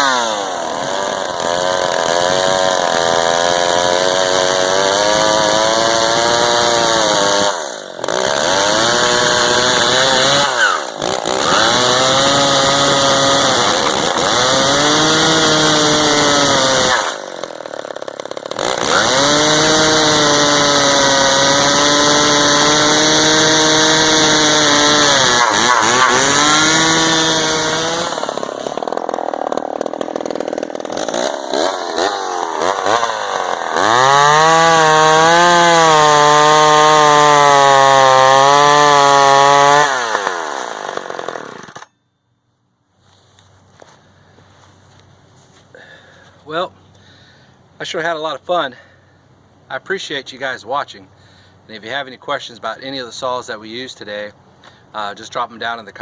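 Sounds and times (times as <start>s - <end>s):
chainsaw cutting wood: 0.0s - 42.0s.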